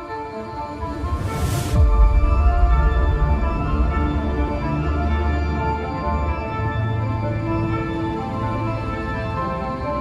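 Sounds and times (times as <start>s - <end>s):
low bass drone: 1.0s - 7.8s.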